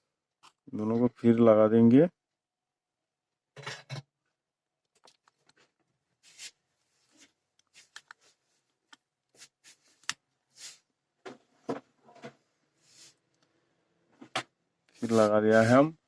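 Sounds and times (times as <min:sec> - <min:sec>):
rubbing and scraping: 0:14.9 - 0:15.8.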